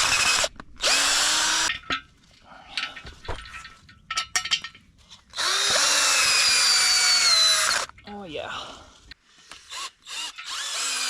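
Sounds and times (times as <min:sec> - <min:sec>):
power drill running: 0:00.0 - 0:01.7, 0:05.4 - 0:07.9, 0:09.7 - 0:11.0.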